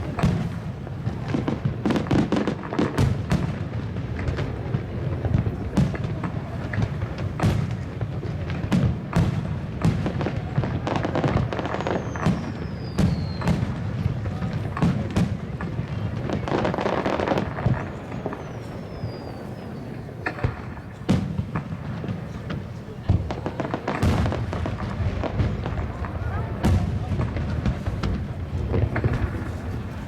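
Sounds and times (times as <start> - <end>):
fireworks booming and cracking: 0.0 - 30.0
firework whistle gliding down: 18.4 - 19.7.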